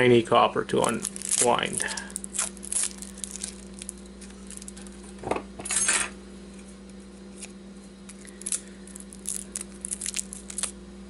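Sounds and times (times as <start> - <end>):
steady low hum: 0.0 - 11.0
tape rasping: 0.8 - 4.9.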